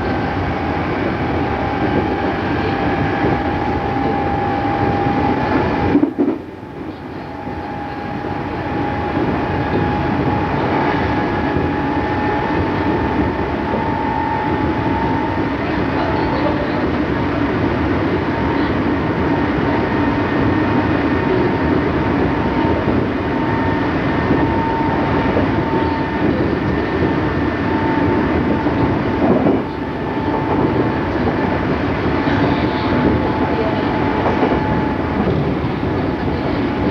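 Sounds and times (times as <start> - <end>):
train wheel and motor noise: 0.0 - 36.9
electric train motor whine: 7.1 - 16.8.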